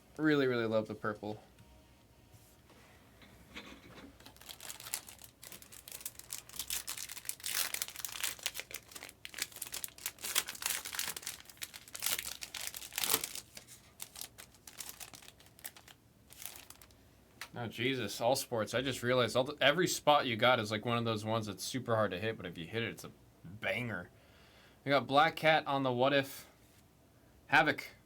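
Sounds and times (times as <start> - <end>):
foil wrapper tearing and crinkling: 4.2 - 17.0.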